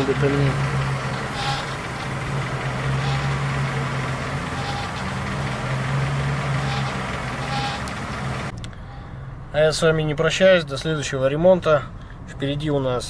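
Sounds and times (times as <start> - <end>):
car engine idling: 0.0 - 9.5
fuel pump sighs: 0.0 - 9.5.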